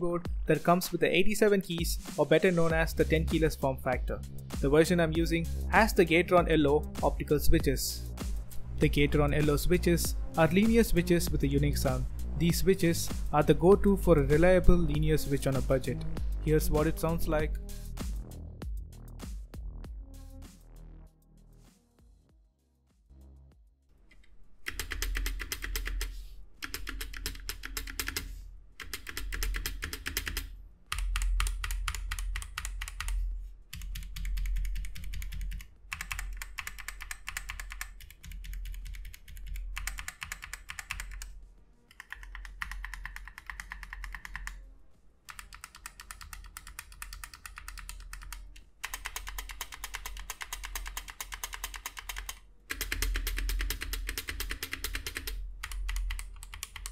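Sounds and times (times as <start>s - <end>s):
mechanical keyboard typing: 24.6s - 41.3s, 41.9s - 44.6s, 45.3s - 56.9s.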